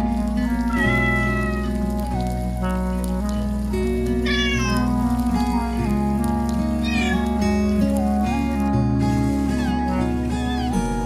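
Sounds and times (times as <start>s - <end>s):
background music with held notes: 0.0s - 11.0s
cat meowing: 0.7s - 1.8s, 4.2s - 5.0s, 6.8s - 7.4s, 9.5s - 11.0s.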